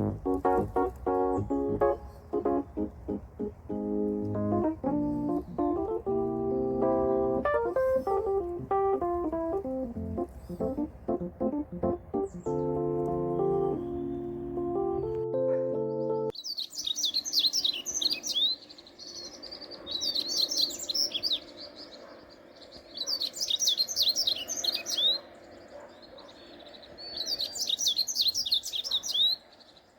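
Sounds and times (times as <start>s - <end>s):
keyboard music: 0.0s - 16.3s
songbird singing: 0.0s - 29.9s.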